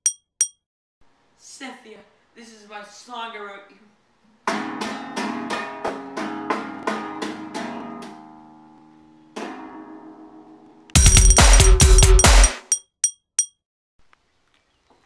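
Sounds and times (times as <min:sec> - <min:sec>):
guitar chord strumming: 0:04.4 - 0:12.3.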